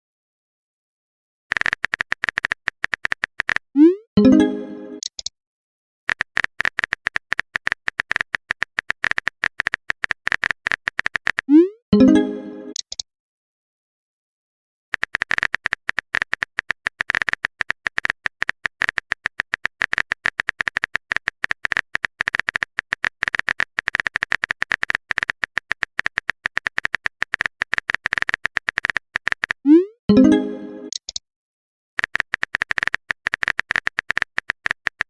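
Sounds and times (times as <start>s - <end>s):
rapid keyboard typing: 1.5s - 3.7s, 6.1s - 11.6s, 14.9s - 29.8s, 32.0s - 35.0s
rising electronic alert tone: 3.8s - 5.0s, 29.7s - 31.0s.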